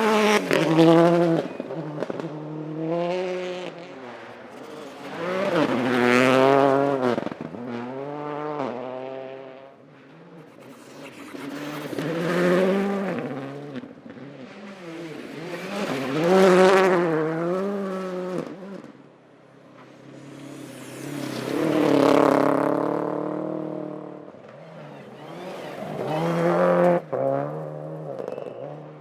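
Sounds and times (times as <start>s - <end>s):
rally car engines revving: 0.0s - 29.0s.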